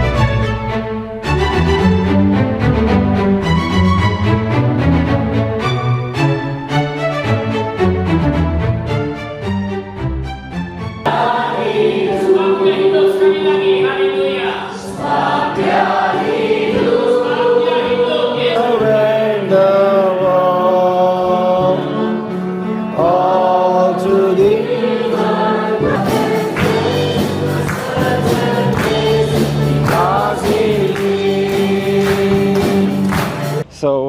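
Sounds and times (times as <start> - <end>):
low accompaniment: 0.0 - 34.0
choir singing a hymn: 11.1 - 33.6.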